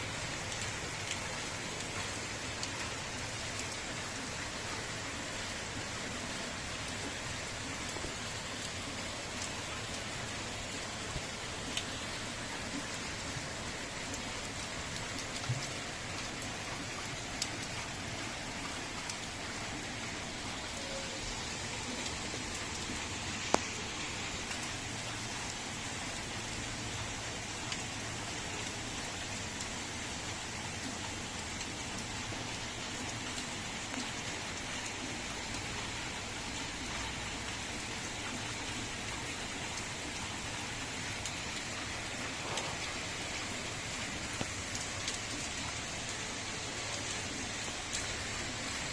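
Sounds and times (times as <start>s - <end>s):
steady rainfall hiss: 0.0s - 48.9s.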